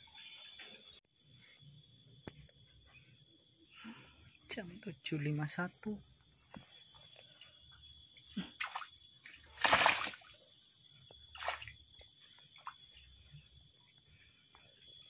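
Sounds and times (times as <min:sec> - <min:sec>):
water splashing and sloshing: 0:08.4 - 0:10.5, 0:11.2 - 0:13.1.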